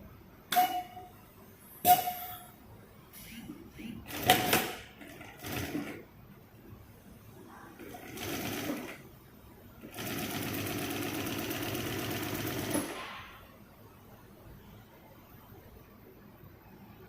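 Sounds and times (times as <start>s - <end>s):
sewing machine stitching: 4.1s - 6.0s, 7.8s - 9.0s.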